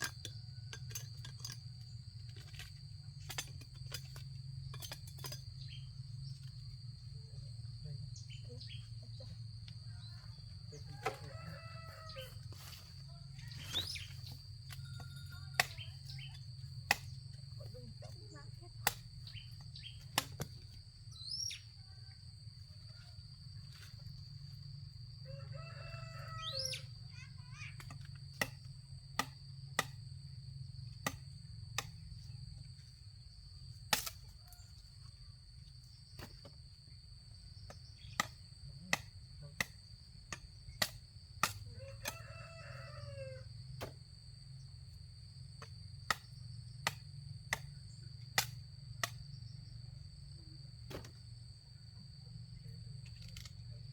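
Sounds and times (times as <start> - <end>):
rooster crowing: 10.0 - 12.8, 25.2 - 27.0, 41.7 - 43.6.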